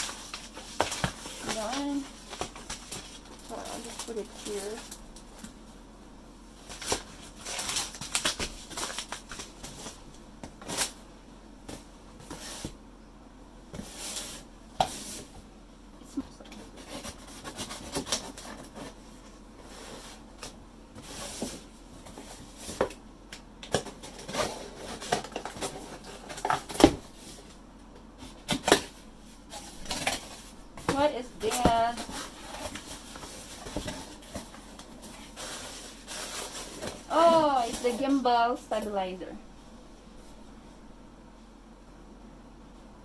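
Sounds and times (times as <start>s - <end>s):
package rustling: 6.7s - 11.0s.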